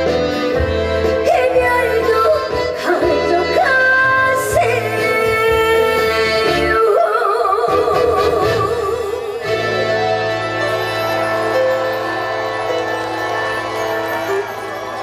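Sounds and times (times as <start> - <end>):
band accompaniment: 0.0 - 15.0
woman singing with vibrato: 1.2 - 9.7.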